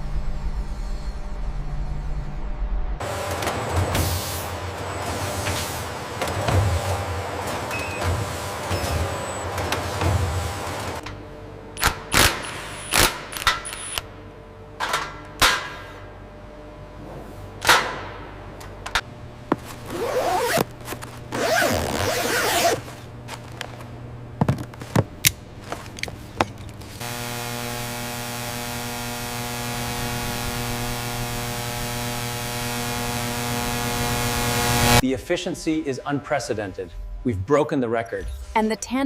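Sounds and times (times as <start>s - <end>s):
steady electronic drone: 27.0s - 35.2s.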